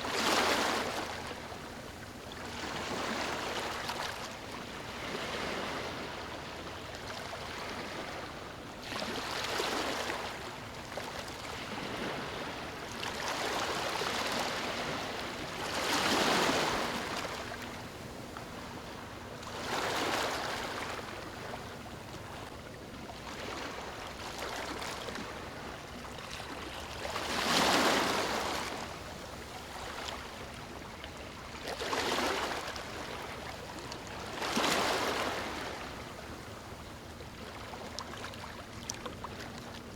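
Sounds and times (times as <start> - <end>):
small waves washing on beach: 0.0 - 21.6, 23.2 - 30.7.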